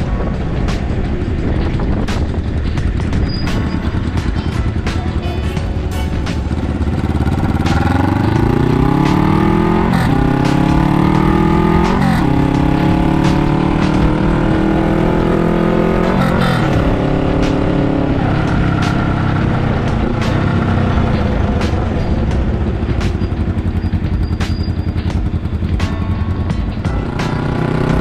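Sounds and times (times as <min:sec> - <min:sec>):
motorcycle accelerating through gears: 0:05.8 - 0:28.0.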